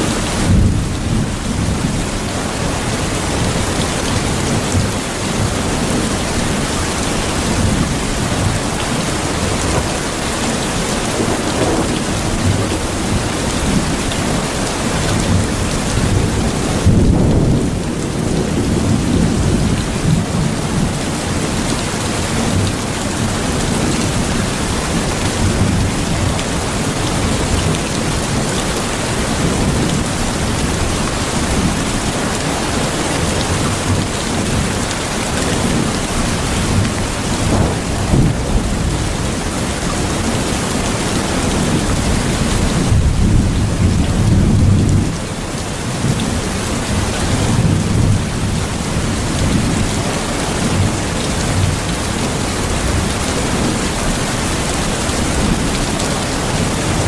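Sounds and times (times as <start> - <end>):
heavy rain falling: 0.0 - 57.0
thunder rumble: 6.9 - 14.3, 15.1 - 21.5, 35.6 - 45.2.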